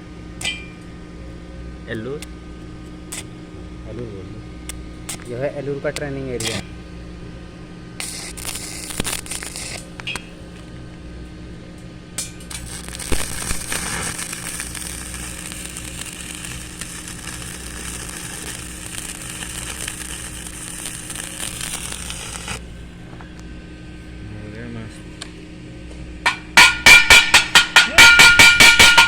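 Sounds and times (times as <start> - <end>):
electrical hum: 0.0 - 29.0
arc welding crackling hiss: 2.1 - 4.2, 5.0 - 6.7, 7.9 - 10.8, 12.0 - 22.6, 26.3 - 29.0.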